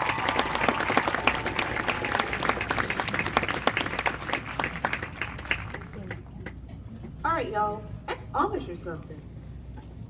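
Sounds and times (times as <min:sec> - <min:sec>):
crowd applauding: 0:00.0 - 0:06.4.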